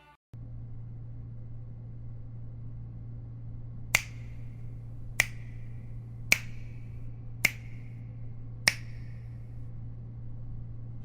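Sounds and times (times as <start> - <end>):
steady low hum: 0.4 - 11.0
finger snaps: 3.9 - 8.0, 8.7 - 9.5.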